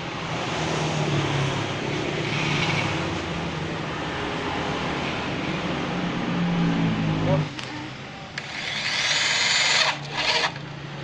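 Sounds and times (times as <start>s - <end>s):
electric drill running: 8.4s - 10.7s.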